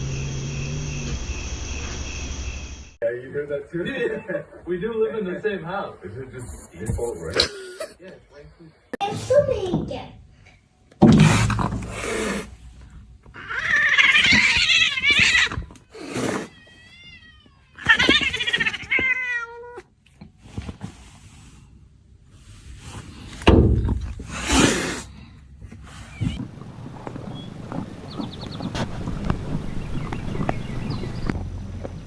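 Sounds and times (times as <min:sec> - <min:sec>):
cat meowing and yowling: 0:13.4 - 0:15.7, 0:16.5 - 0:19.9.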